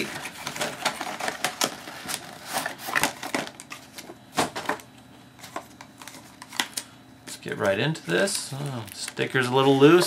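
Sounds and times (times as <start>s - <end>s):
packaging crinkling: 0.0s - 4.0s.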